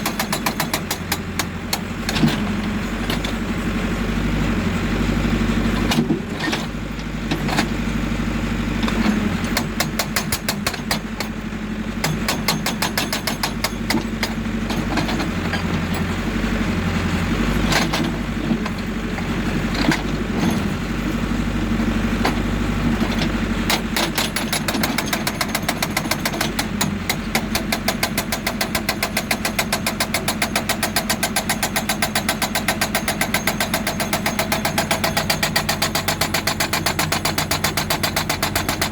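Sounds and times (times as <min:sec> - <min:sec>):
hydraulic breaker hammering rock: 0:00.0 - 0:03.5, 0:08.8 - 0:11.4, 0:12.0 - 0:16.2, 0:17.6 - 0:21.3, 0:22.2 - 0:38.9
diesel engine running: 0:00.0 - 0:38.9.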